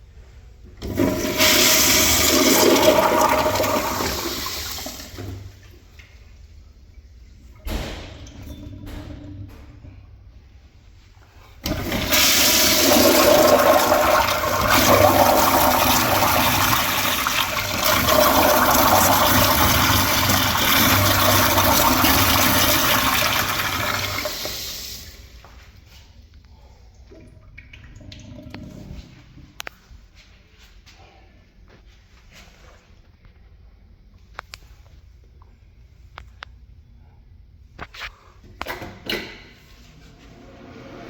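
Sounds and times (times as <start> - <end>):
toilet flushing water rush: 0.8 - 5.9, 11.6 - 25.4, 40.2 - 41.0.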